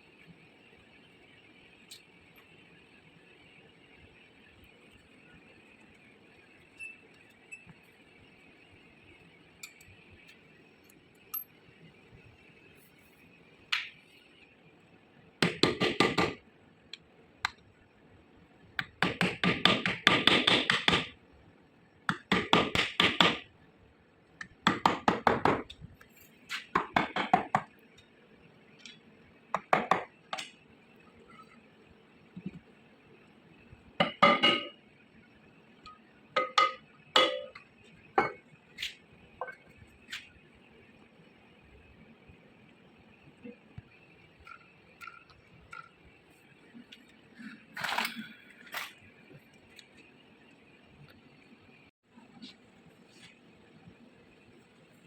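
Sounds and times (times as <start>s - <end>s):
hammer tapping on metal: 15.4s - 16.4s, 18.8s - 21.1s, 22.1s - 23.4s, 26.7s - 27.7s.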